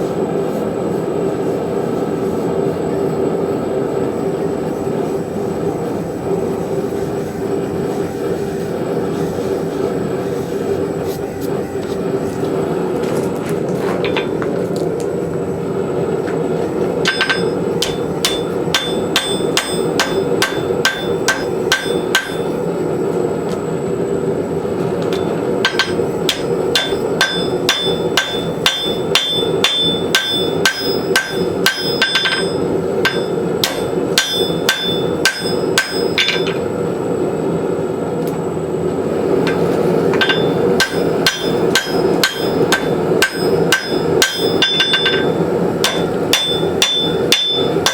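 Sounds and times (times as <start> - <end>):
forge running: 0.0 - 47.9
hammer striking steel on anvil: 17.0 - 22.6, 25.0 - 36.6, 39.5 - 47.9.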